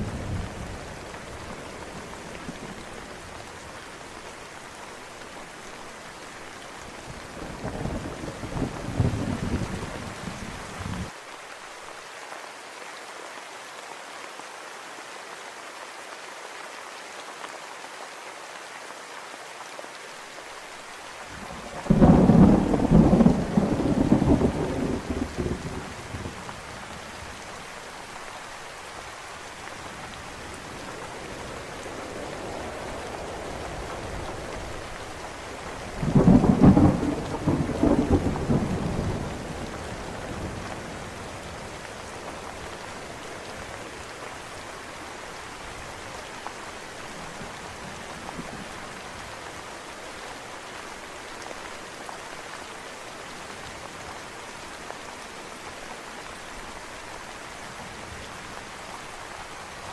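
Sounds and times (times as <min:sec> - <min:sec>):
steady rain falling: 0:00.0 - 0:59.9
thunder rumbling: 0:07.4 - 0:11.1, 0:21.4 - 0:27.0, 0:30.5 - 0:41.8.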